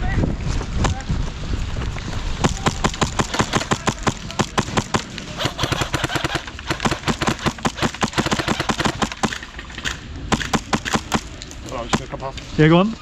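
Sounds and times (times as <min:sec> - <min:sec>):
airsoft guns firing: 0:02.4 - 0:12.2.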